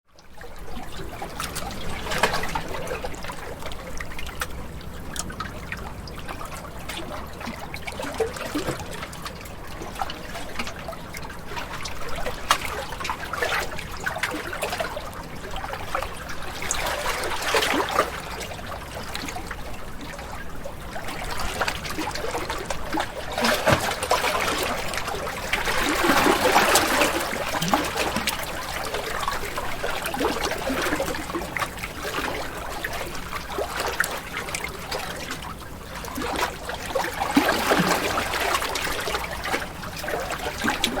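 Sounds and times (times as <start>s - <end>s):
water splashing and trickling: 0.2s - 41.0s
ocean waves breaking: 21.4s - 32.5s.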